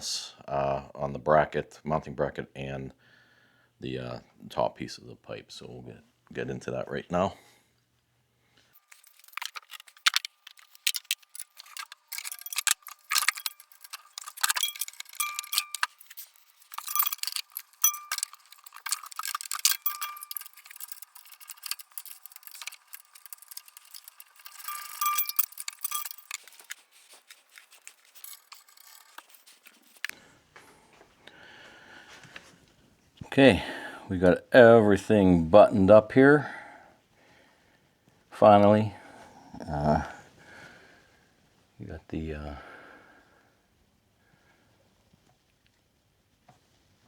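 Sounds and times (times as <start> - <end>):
metal hand tools clinking: 8.8 - 30.2.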